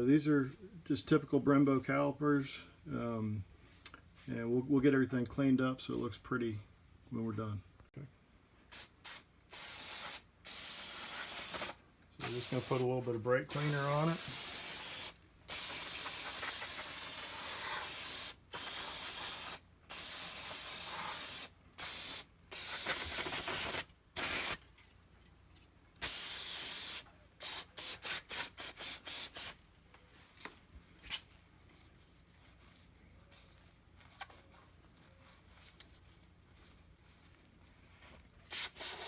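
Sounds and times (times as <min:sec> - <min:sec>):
quick aerosol squirts: 0:08.7 - 0:12.8, 0:13.5 - 0:24.6, 0:26.0 - 0:29.6, 0:38.5 - 0:39.0
aerosol spray hissing: 0:08.7 - 0:12.9, 0:13.5 - 0:24.6, 0:26.0 - 0:29.6, 0:38.5 - 0:39.0.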